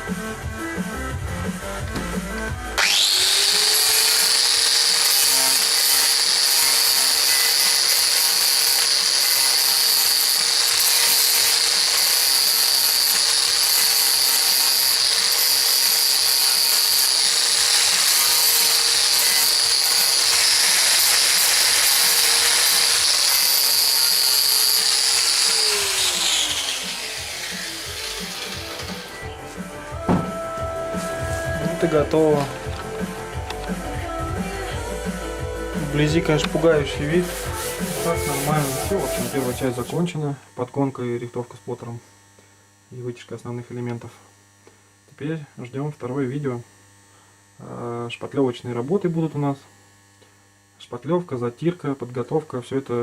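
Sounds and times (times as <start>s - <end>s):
angle grinder grinding metal: 1.8s - 40.8s.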